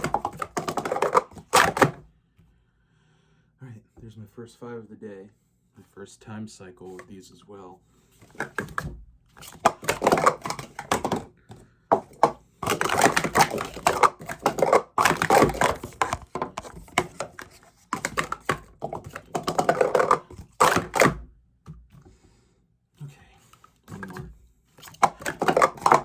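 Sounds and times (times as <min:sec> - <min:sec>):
plastic cups clattering: 0:00.0 - 0:02.0, 0:08.2 - 0:21.2, 0:23.9 - 0:26.0.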